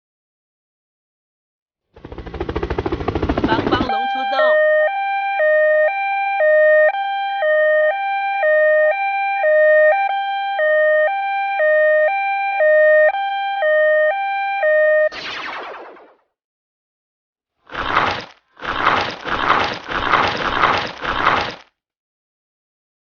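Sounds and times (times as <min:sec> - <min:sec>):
two-tone emergency siren: 0:03.7 - 0:16.2.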